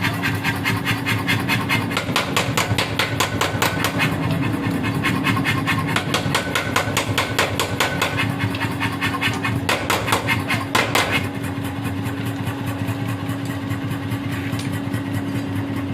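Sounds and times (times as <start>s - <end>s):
motor humming: 0.0s - 15.9s
forging hammer striking: 1.8s - 4.2s, 5.7s - 8.3s, 9.1s - 11.3s.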